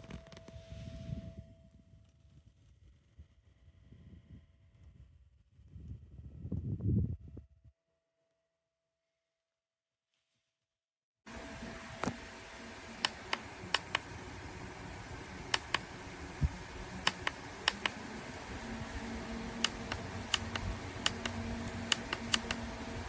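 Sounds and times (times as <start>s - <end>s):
desk fan humming: 11.3s - 23.0s
sharp clicks: 11.4s - 23.0s.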